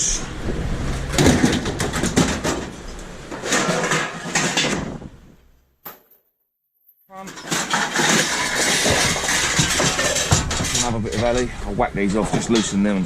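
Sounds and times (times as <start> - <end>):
scrap metal clanking: 1.0 - 5.1, 7.2 - 13.0.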